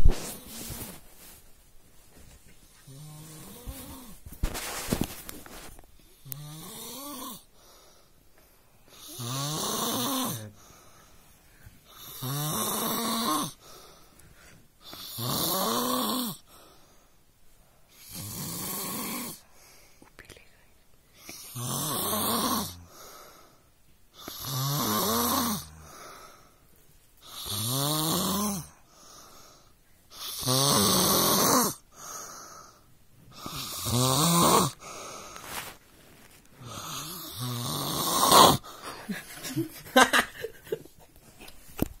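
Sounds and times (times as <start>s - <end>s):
quiet breaths: 0.0s - 39.8s
child snoring: 2.8s - 4.2s, 6.1s - 7.5s, 8.9s - 10.6s, 11.9s - 13.7s, 14.8s - 16.5s, 17.9s - 19.4s, 21.2s - 23.5s, 24.2s - 26.4s, 27.2s - 35.4s, 36.6s - 38.8s.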